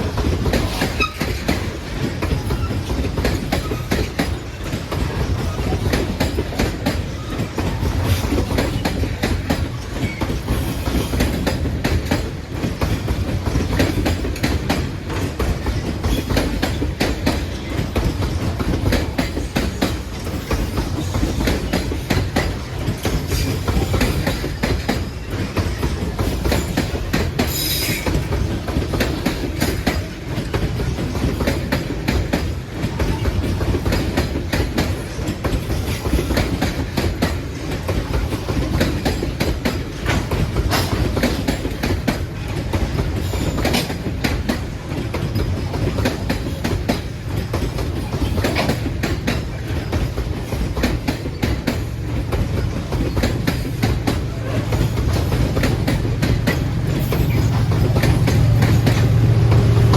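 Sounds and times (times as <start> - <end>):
train wheels clattering over rail joints: 0.0 - 59.9
high wheel squeal: 27.5 - 28.1.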